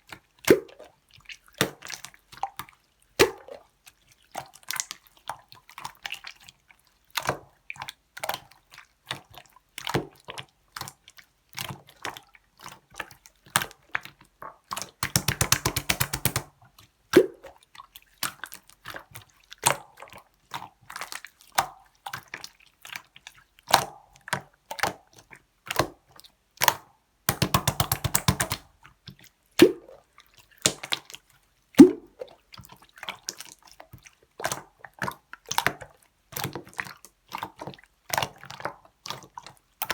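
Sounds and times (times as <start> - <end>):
slime squished by hand: 15.0 - 16.5, 27.3 - 28.7, 31.8 - 32.2.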